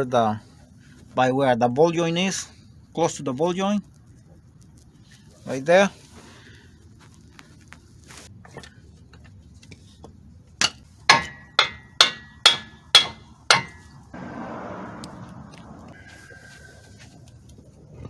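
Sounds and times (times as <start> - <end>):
hammer striking steel: 10.6 - 14.0
metal scraping: 11.1 - 16.5.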